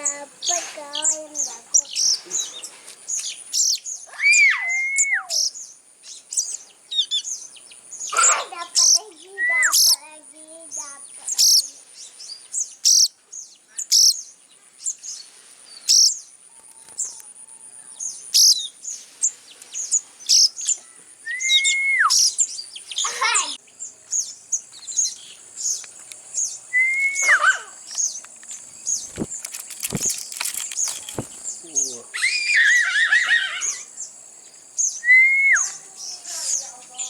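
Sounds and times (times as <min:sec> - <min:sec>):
bird chick chirping: 0:22.1 - 0:32.0.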